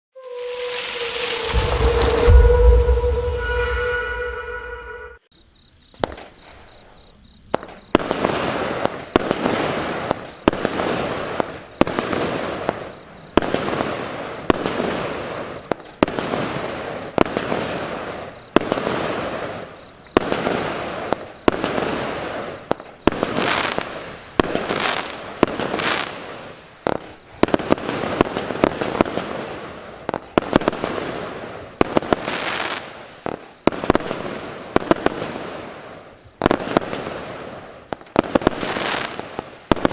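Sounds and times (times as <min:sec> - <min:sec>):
crackling hiss of fireworks: 0:00.1 - 0:39.9
firework barrage shots: 0:00.2 - 0:05.2.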